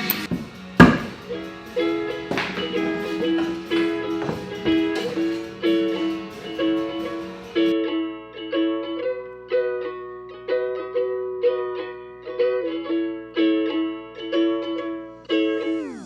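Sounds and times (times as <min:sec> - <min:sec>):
plucked-string melody: 0:00.0 - 0:16.0
sharp knock: 0:00.3 - 0:01.4.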